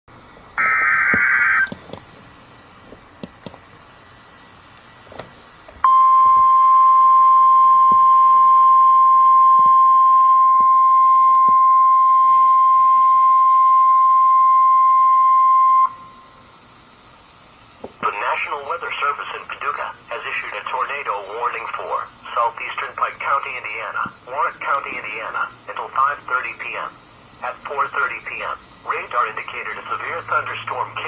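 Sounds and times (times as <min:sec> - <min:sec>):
steady alarm tone: 0:00.6 - 0:01.8, 0:05.8 - 0:16.4
warbling data screech: 0:00.6 - 0:01.8
static clicks: 0:00.6 - 0:02.1, 0:02.9 - 0:03.6.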